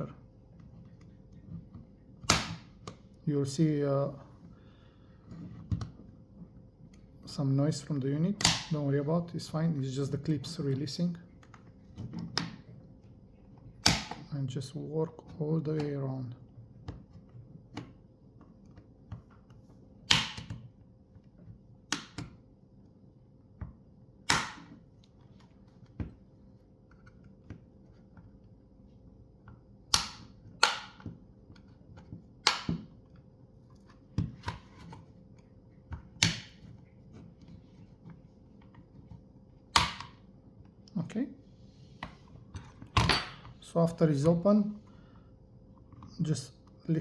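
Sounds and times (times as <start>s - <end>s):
plastic clips snapping loose: 29.9s - 31.2s, 32.4s - 32.9s.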